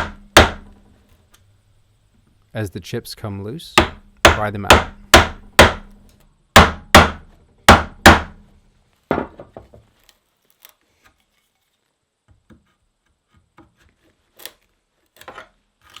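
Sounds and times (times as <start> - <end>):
mallet striking chisel into wood: 0.0 - 0.8, 3.8 - 6.0, 6.6 - 8.4.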